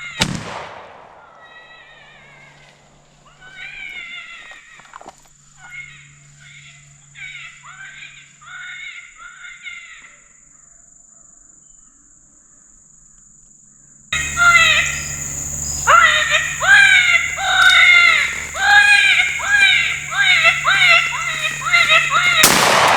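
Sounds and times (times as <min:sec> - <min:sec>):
canines yipping and howling: 0:14.2 - 0:22.5.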